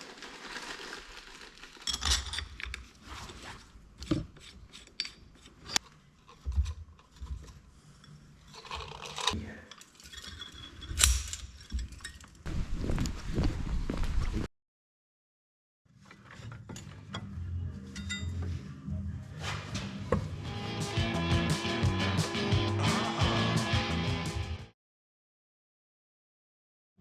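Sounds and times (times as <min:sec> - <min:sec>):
metal parts and tools clinking: 0:01.8 - 0:02.9, 0:04.0 - 0:12.5, 0:17.9 - 0:18.5.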